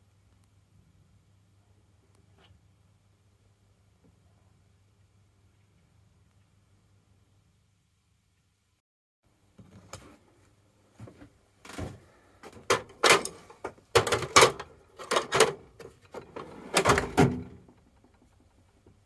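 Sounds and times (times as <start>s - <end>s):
hard objects knocking and clunking: 11.7s - 19.0s.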